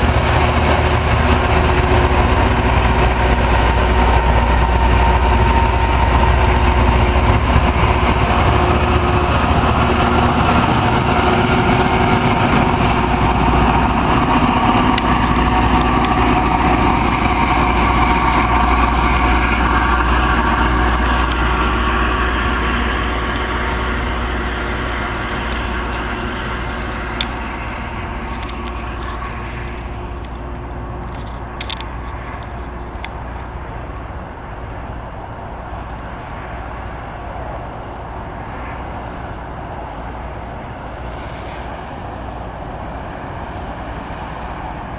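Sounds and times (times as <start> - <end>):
train diesel engines running: 0.0 - 44.9.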